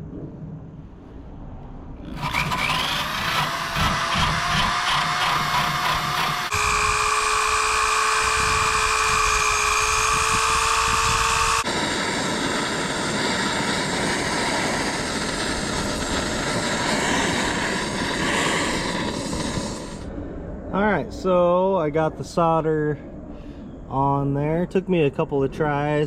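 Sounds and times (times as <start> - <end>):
torch roaring hiss: 2.0 - 20.1.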